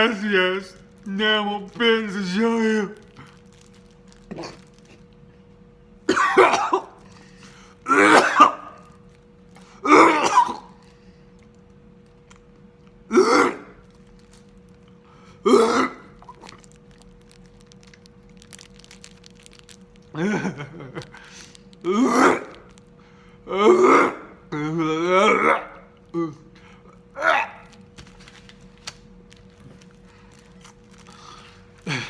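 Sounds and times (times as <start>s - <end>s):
man clearing throat: 6.1s - 7.1s, 7.8s - 8.8s, 9.8s - 10.8s, 13.1s - 13.8s, 15.4s - 16.5s, 20.1s - 21.3s, 21.9s - 22.6s, 23.5s - 26.6s
man coughing: 6.1s - 7.1s, 7.9s - 8.8s, 9.8s - 10.8s, 13.1s - 13.8s, 15.4s - 16.5s, 20.2s - 22.6s, 23.5s - 26.5s.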